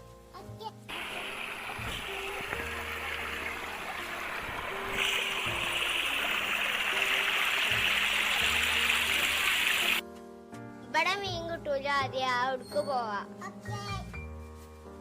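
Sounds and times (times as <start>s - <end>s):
faint music: 0.0s - 15.0s
running water rushing: 0.9s - 10.0s.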